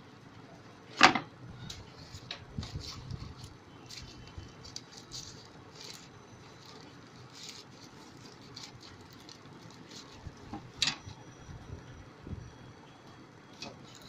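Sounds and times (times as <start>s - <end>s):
packaging scratching and rustling: 1.7s - 10.8s, 13.8s - 14.0s.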